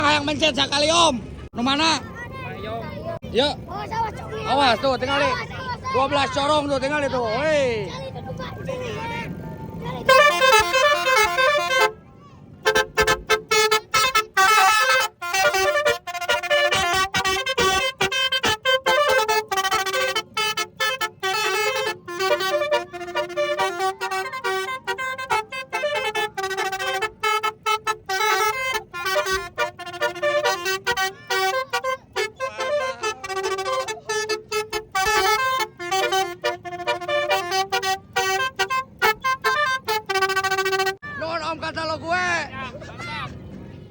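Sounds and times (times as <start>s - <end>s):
choppy horn melody: 9.6s - 41.1s.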